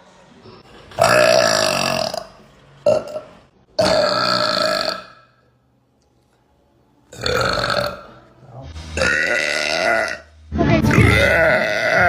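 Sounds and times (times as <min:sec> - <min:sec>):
woman burping: 0:01.0 - 0:02.3, 0:07.2 - 0:08.2, 0:09.0 - 0:10.3, 0:10.9 - 0:12.0.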